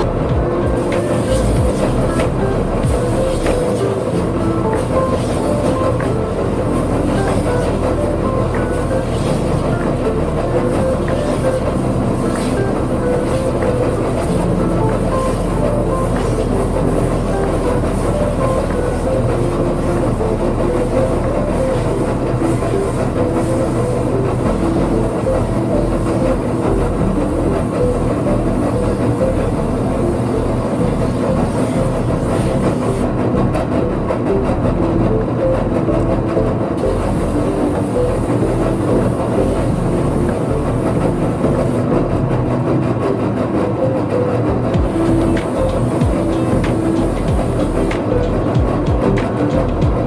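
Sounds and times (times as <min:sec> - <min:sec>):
power sanding tool on wood: 0:00.0 - 0:33.4, 0:44.8 - 0:48.6
lofi background music: 0:00.0 - 0:50.0
steady mechanical drone: 0:00.0 - 0:50.0.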